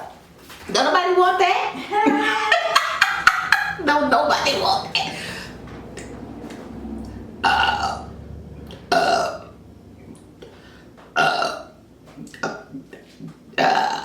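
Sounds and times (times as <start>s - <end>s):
woman burping: 7.4s - 8.1s, 8.9s - 9.5s, 11.2s - 14.0s.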